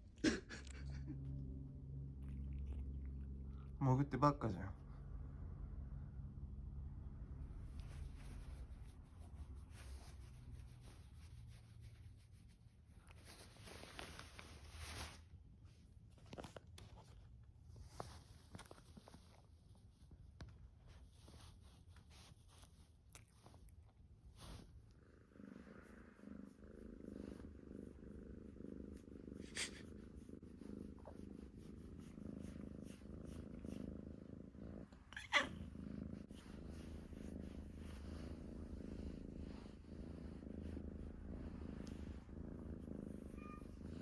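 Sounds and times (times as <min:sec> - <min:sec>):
cat snoring: 0:25.2 - 0:44.0.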